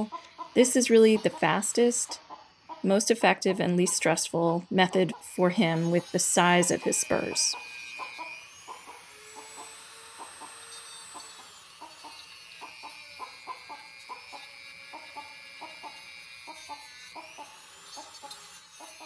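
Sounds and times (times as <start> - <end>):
rotary tool whining: 0.0 - 19.0.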